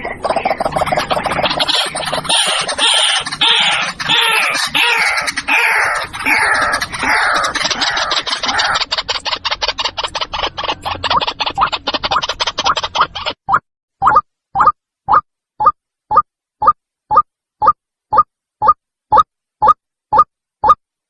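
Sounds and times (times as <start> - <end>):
waterhen hoarse calls: 0.3 - 12.3
fast clicking rattle: 5.1 - 13.3.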